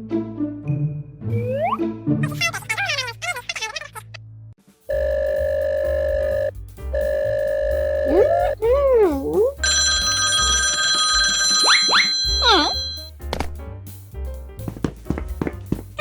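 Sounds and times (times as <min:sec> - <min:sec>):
telephone ringing tone: 0:04.9 - 0:08.1, 0:09.6 - 0:13.1
background music with bass line: 0:04.9 - 0:09.7
high chime-like tone: 0:11.6 - 0:13.1
wavering cartoon tones: 0:11.6 - 0:13.1.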